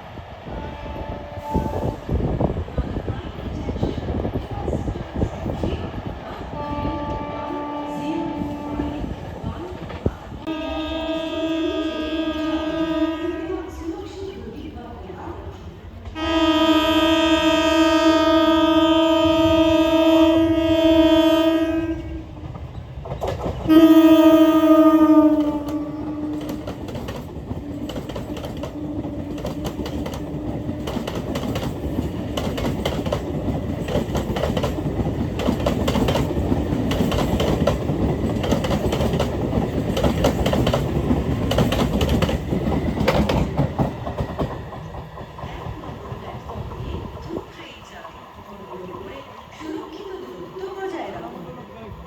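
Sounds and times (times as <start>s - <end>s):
train horn blasts: 0.5s - 2.3s, 6.5s - 9.3s, 10.4s - 13.9s, 16.2s - 22.5s, 23.7s - 30.9s
train wheels clattering on rails: 22.4s - 47.8s.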